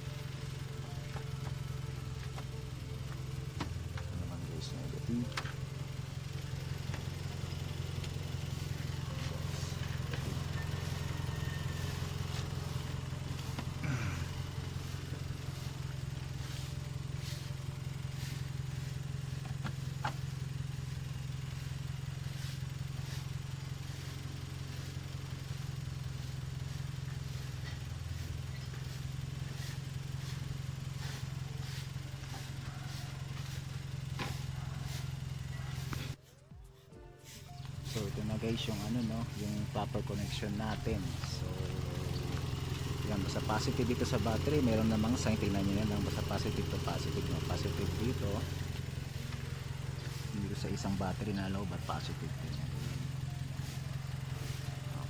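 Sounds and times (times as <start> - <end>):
car engine idling: 0.0 - 36.2, 37.3 - 55.0.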